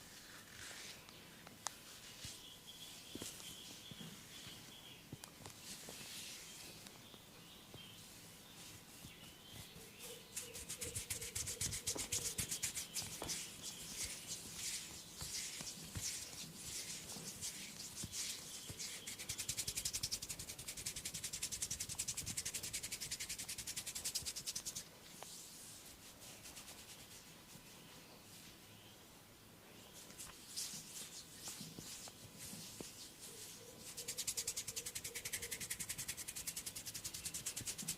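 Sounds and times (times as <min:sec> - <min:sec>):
hands scratching hair and skin: 0:08.6 - 0:27.8, 0:30.0 - 0:37.9.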